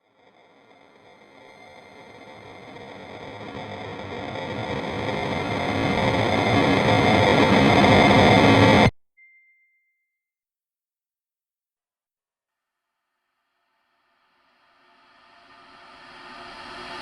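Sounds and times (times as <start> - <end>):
distorted noisy drone riser: 0.6 - 8.9, 14.8 - 17.0
faint high ring: 9.2 - 10.2.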